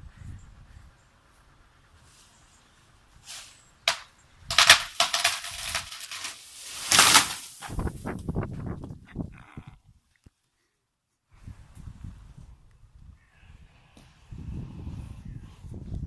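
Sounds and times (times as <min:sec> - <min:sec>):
tree crown rushing through branches: 0:03.2 - 0:08.2
tree trunk cracking: 0:03.9 - 0:07.8
branches snapping and knocking: 0:03.9 - 0:07.9.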